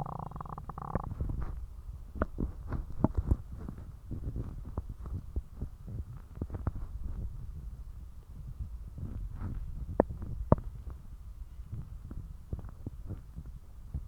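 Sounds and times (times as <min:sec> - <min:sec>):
stomach gurgling: 0:00.0 - 0:01.5.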